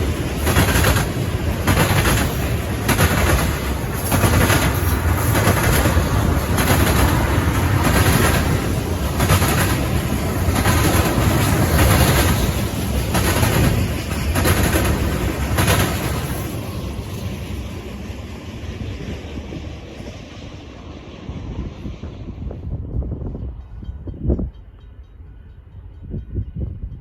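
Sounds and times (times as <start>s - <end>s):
wheels clanking on rail joints: 0.0s - 17.9s
train wheels rumbling on rail: 0.0s - 27.0s.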